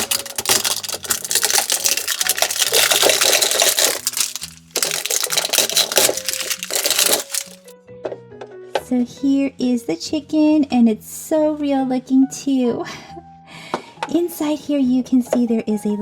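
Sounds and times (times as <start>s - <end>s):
plastic toy pieces clattering: 0.0s - 7.7s.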